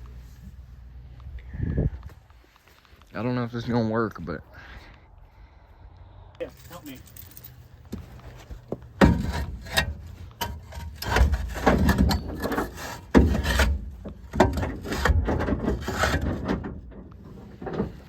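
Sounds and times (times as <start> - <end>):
brick scraping and knocking: 7.9 - 18.0.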